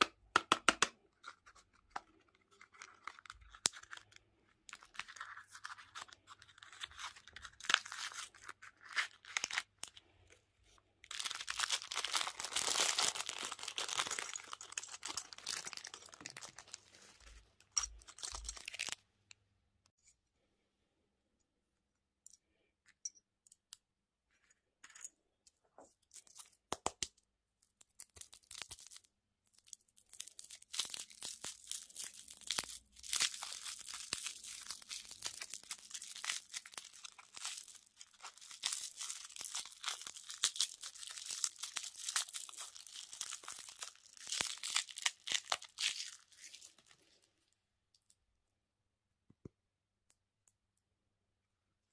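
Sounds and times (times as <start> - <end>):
candy wrapper tearing and crinkling: 0.9 - 10.2, 11.0 - 19.0, 26.0 - 47.3.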